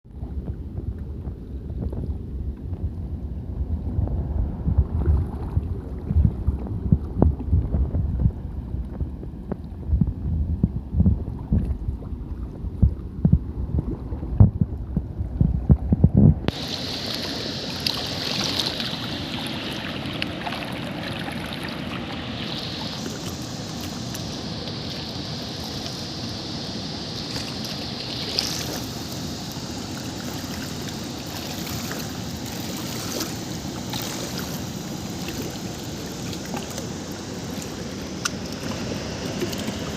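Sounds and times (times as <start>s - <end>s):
wind buffeting microphone: 0.0s - 39.9s
waterfall rushing hiss: 16.5s - 39.9s.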